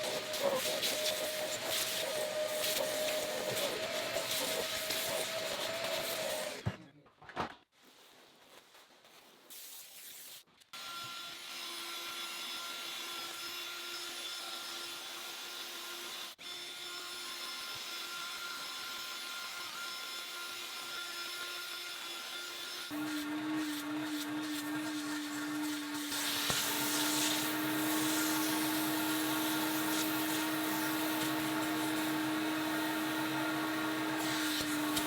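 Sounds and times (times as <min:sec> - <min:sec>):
cleaning machine motor whine: 0:23.0 - 0:35.0.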